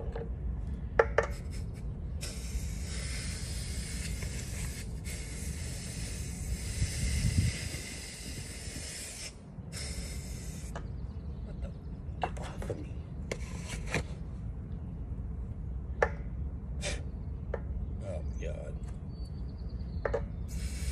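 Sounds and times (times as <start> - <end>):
air hissing through valve: 1.3 - 10.8, 20.4 - 20.9.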